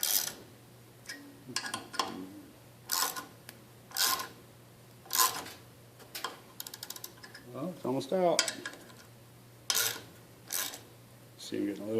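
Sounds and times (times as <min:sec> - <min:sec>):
ratchet clicking: 0:00.0 - 0:00.4, 0:06.6 - 0:07.1, 0:09.7 - 0:10.8.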